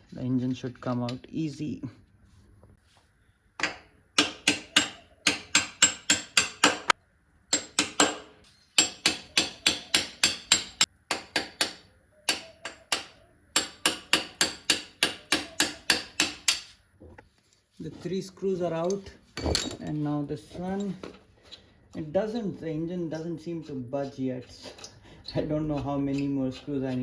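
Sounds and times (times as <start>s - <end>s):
hammer tapping on metal: 3.6s - 16.7s.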